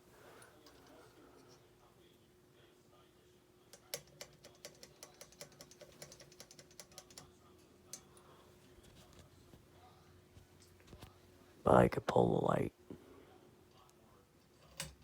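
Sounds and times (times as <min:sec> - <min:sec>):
fan pull chain clicking: 0:03.7 - 0:07.3.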